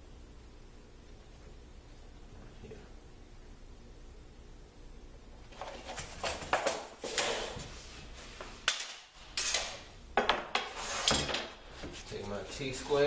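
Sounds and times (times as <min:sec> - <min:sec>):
tools and boards clattering: 0:05.5 - 0:07.6, 0:08.7 - 0:11.6.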